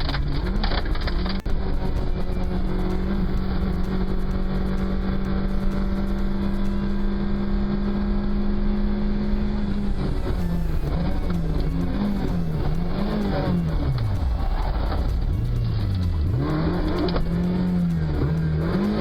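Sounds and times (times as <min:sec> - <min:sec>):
rally car engine revving: 0:00.0 - 0:19.0.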